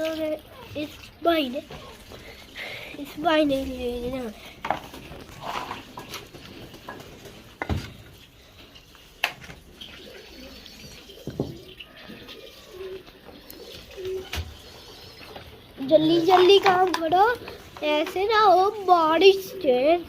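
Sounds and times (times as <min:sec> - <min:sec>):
pigeons cooing: 0:09.6 - 0:20.0.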